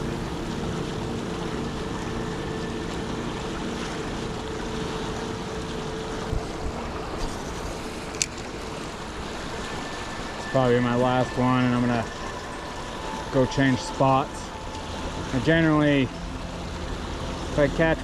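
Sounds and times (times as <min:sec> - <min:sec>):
fast-flowing river rushing: 0:00.0 - 0:18.0
wind on microphone: 0:05.5 - 0:16.1.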